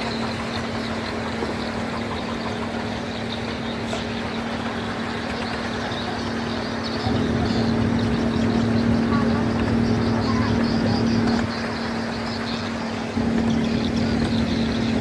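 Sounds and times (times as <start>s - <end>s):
speedboat outboard engine: 0.0s - 15.0s.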